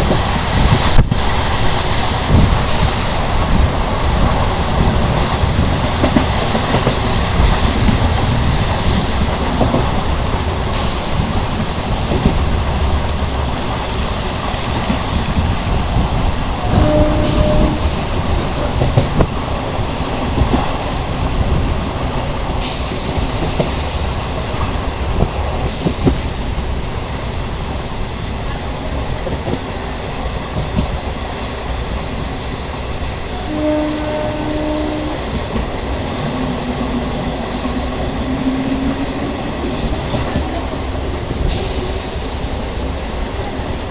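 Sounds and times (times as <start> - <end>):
train wheels rumbling on rails: 0.0 - 43.9
clacks over rail joints: 12.0 - 15.2.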